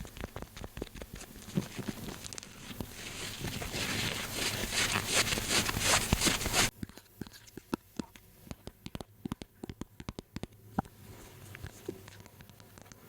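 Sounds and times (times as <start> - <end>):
dense crackling rustle: 0.0 - 6.7.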